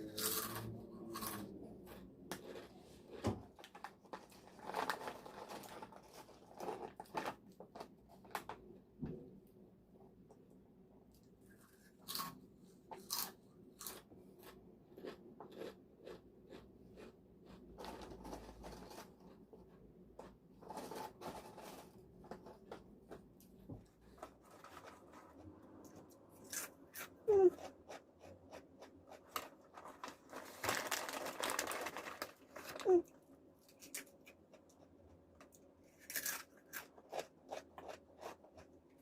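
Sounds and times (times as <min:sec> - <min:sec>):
chips crunching while chewed: 0:00.0 - 0:07.4, 0:12.0 - 0:12.4, 0:13.0 - 0:19.2, 0:35.9 - 0:38.8.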